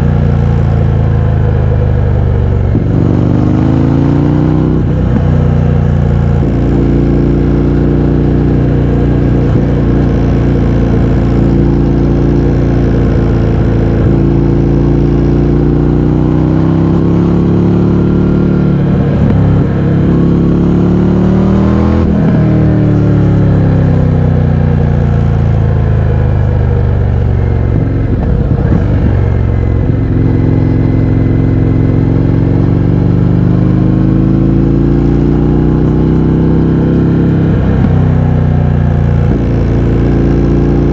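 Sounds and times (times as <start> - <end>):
motorcycle engine accelerating: 0.0 - 40.9.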